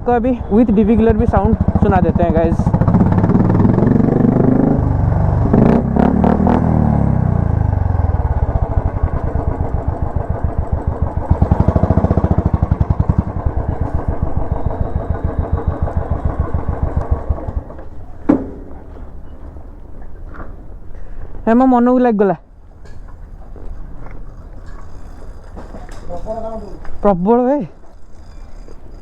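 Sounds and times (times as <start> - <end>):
motorcycle engine revving and idling: 0.0 - 19.7, 22.4 - 29.0
exhaust pops: 0.5 - 21.4.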